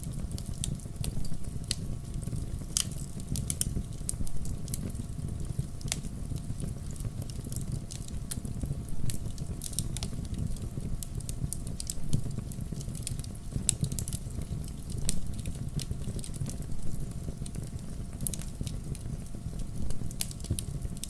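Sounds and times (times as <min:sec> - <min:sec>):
campfire crackling: 0:00.0 - 0:21.0.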